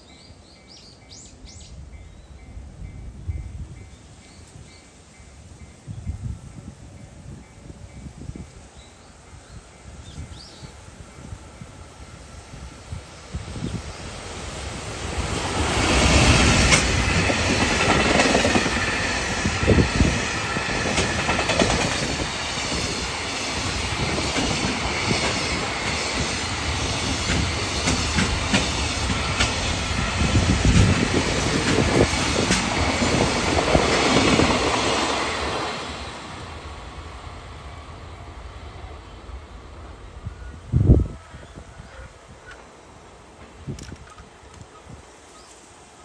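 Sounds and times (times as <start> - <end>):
freight train wagons rumbling: 0.6 - 44.9
wheels clicking over rail joints: 15.1 - 35.6.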